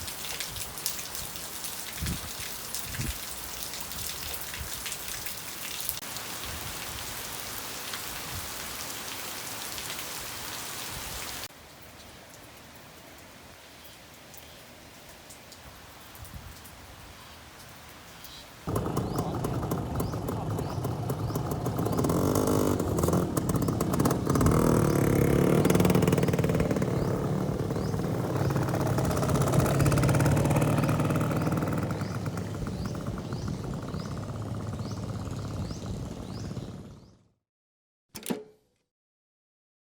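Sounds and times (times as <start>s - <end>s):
scooter engine running: 18.7s - 37.3s.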